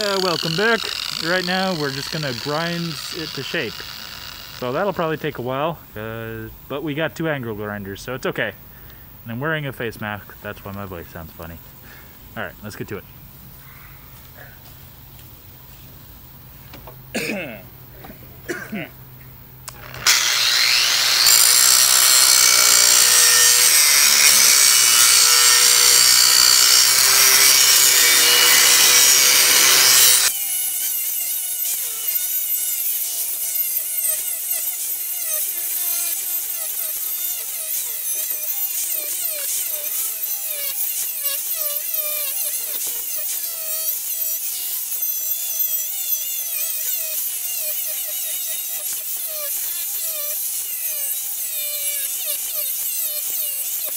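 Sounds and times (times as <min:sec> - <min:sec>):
angle grinder grinding steel: 0:00.0 - 0:06.8, 0:19.7 - 0:53.9.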